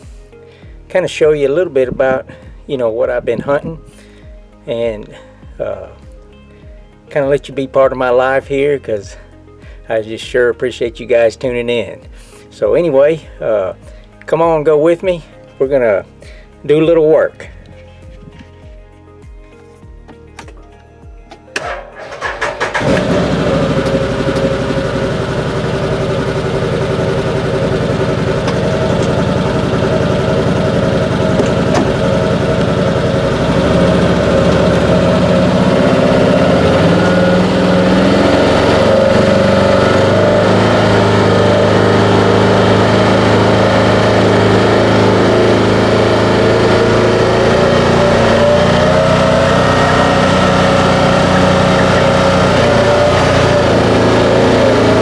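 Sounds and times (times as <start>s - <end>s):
vehicle engine running: 21.6s - 55.0s.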